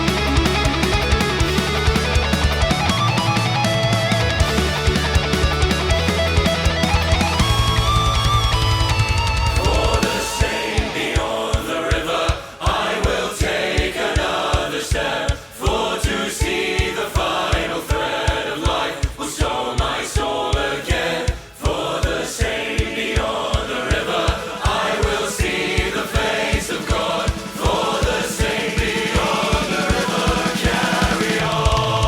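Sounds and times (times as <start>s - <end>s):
power metal music: 0.0s - 11.4s, 26.8s - 32.0s
fast kick drum beats: 0.0s - 32.0s
choir singing: 9.2s - 32.0s.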